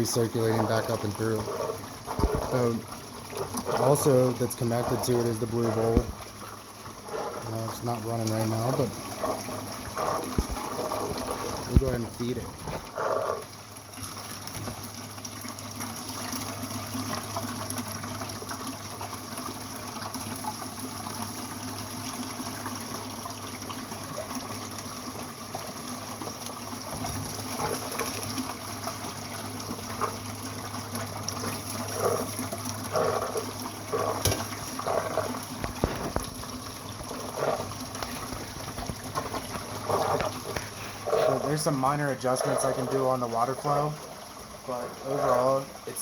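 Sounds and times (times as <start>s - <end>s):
short loud water bursts: 0.0s - 13.5s
low pump hum: 0.0s - 46.0s
water running down a sluice: 0.0s - 46.0s.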